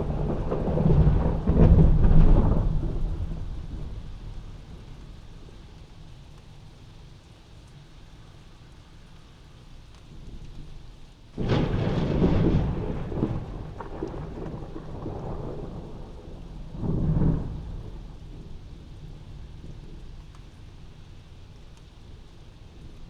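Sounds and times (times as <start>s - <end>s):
thunder rumbling: 0.0s - 6.1s, 10.1s - 20.6s
steady rain: 0.0s - 23.0s.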